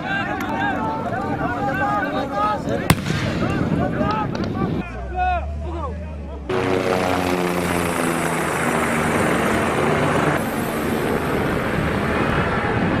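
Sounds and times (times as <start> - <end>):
aircraft engine passing: 4.6 - 13.0.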